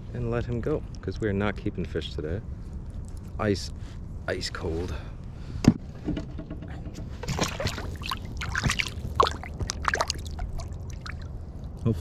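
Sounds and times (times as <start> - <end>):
small knocks: 5.6 - 8.0
water splashing and dripping: 7.2 - 11.4.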